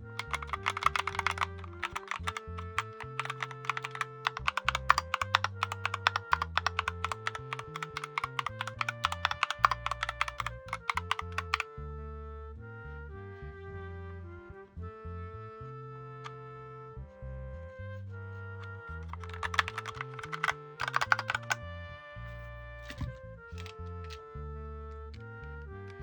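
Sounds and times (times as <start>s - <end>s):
background music: 0.0s - 26.0s
fast typing on keyboard: 0.1s - 11.6s, 19.0s - 21.6s, 23.6s - 23.8s.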